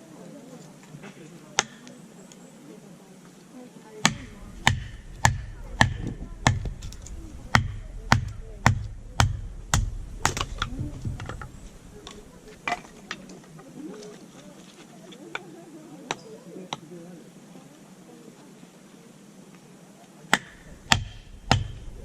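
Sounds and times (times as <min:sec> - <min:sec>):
sharp knocks: 0:04.1 - 0:11.6, 0:20.3 - 0:22.0.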